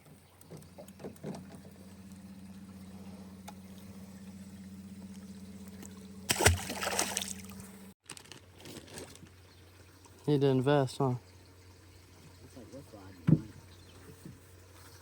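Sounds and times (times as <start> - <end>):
small motor humming: 0.2 - 8.0
water splash: 5.8 - 7.8.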